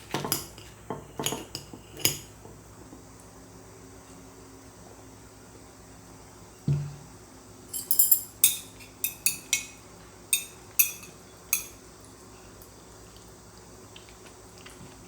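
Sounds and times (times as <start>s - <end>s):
dull thump: 6.7s - 7.0s
cutlery clinking against dishes: 7.7s - 11.8s.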